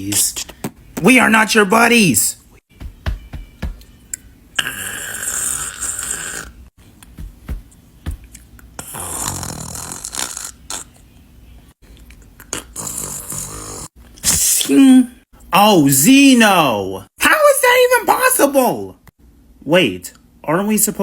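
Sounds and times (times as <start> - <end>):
person snoring: 4.6 - 6.7, 8.8 - 10.9, 12.8 - 14.0.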